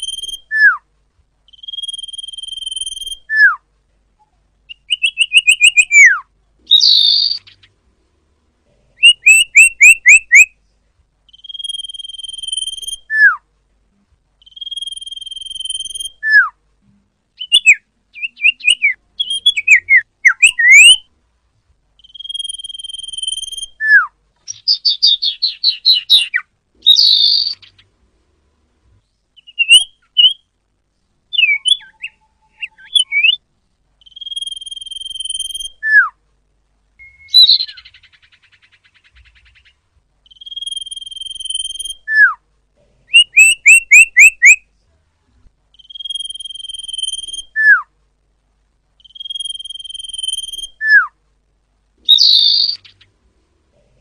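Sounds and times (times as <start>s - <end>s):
flycatcher whistled song: 0.0s - 0.8s, 1.5s - 3.6s, 4.7s - 7.6s, 9.0s - 10.5s, 11.3s - 13.4s, 14.4s - 16.6s, 17.4s - 21.1s, 22.0s - 27.8s, 29.4s - 30.4s, 31.3s - 33.4s, 34.0s - 36.2s, 37.0s - 38.7s, 40.3s - 42.4s, 43.1s - 44.6s, 45.8s - 47.9s, 49.0s - 51.2s, 52.1s - 53.0s.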